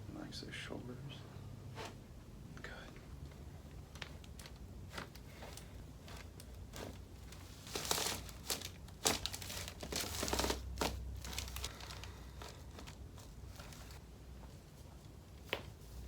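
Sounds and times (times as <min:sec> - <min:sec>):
crinkling and rustling on table: 0:03.7 - 0:14.5.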